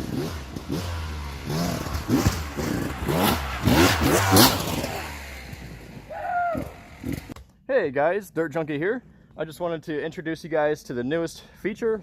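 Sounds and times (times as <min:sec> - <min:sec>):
dirt bike engine revving: 0:00.0 - 0:07.4.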